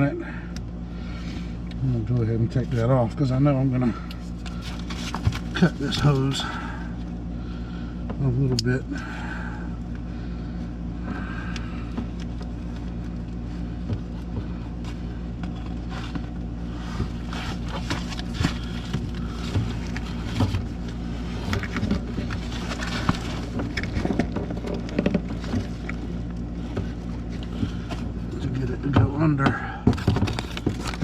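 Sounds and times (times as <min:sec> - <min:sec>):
low machine hum: 0:00.0 - 0:31.0
clicks and rustles of handling: 0:04.0 - 0:07.1, 0:11.5 - 0:31.0.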